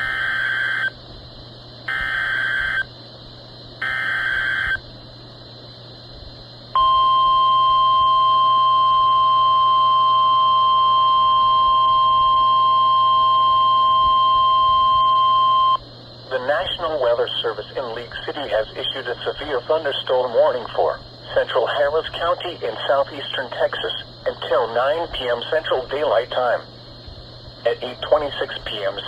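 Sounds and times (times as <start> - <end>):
steady warning alarm tone: 0.0 - 1.0, 1.9 - 3.0, 3.8 - 4.8, 6.7 - 26.7.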